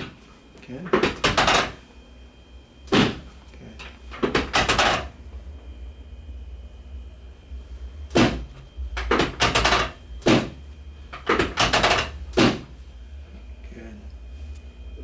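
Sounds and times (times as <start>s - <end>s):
rapid mechanical clicking: 9.0s - 10.4s.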